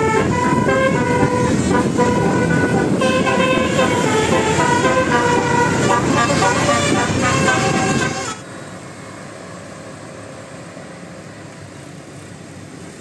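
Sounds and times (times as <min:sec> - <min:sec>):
musical horn playing a tune: 0:00.0 - 0:08.4
engine and traffic rumble: 0:00.0 - 0:13.0.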